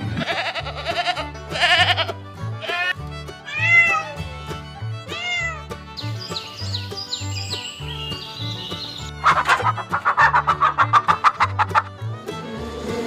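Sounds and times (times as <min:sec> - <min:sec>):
background music with bass line: 0:00.0 - 0:13.0
animal cries: 0:00.2 - 0:02.9, 0:03.5 - 0:04.2, 0:05.1 - 0:05.6.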